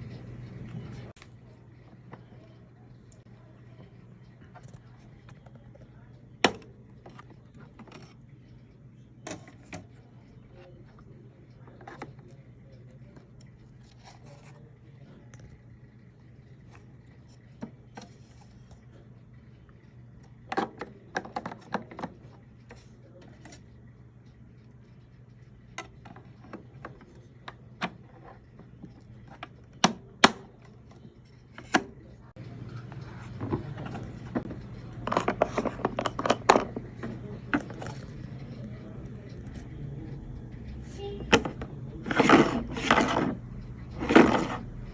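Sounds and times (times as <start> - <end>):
faint steady hum: 0.0 - 44.9.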